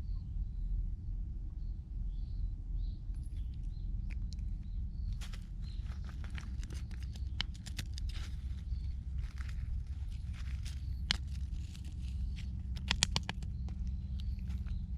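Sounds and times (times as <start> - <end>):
low steady rumble: 0.0 - 14.9
rustling with crackling clicks: 3.1 - 14.9.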